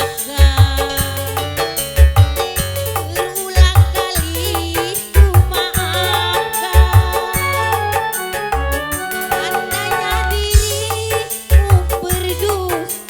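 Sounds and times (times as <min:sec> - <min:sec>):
shaker ticking: 0:00.0 - 0:07.6
keyboard melody: 0:00.0 - 0:13.0
steady drum beat: 0:00.0 - 0:13.0
heavy low drum hits: 0:10.4 - 0:12.0.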